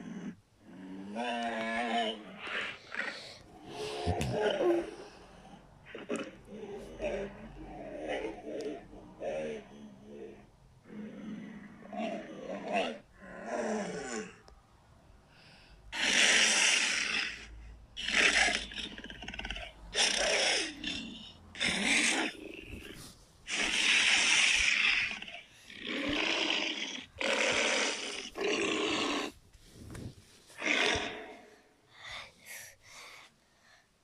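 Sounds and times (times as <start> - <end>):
monster roars: 5.8 - 14.4, 15.9 - 29.4, 30.6 - 31.6.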